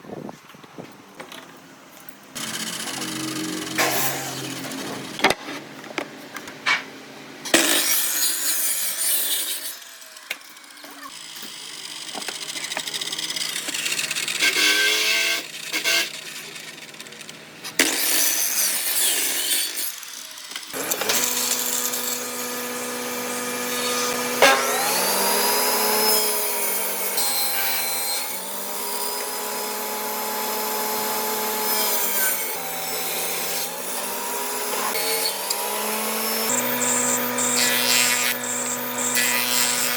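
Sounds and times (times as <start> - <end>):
electric motor running: 2.4 - 5.2, 20.8 - 28.0, 34.2 - 39.9
power tools cutting wood: 2.4 - 5.4, 7.5 - 39.9.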